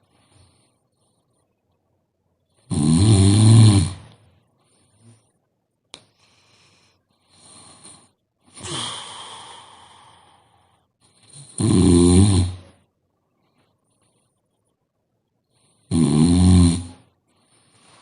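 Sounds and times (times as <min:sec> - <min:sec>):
woman snoring: 0:02.7 - 0:04.1, 0:11.4 - 0:12.7, 0:15.9 - 0:17.0.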